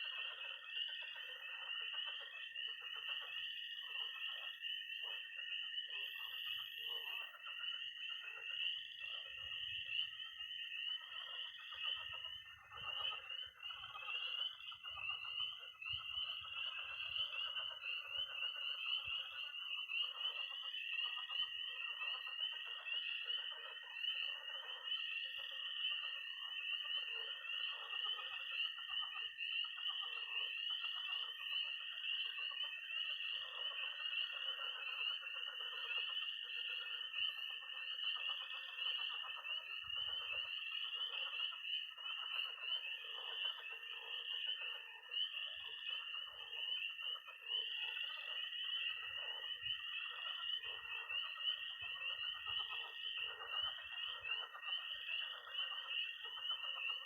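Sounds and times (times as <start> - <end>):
high-pitched toad trill: 0.0 - 26.3
frogs croaking: 0.0 - 57.0
tree frogs peeping: 0.0 - 57.0.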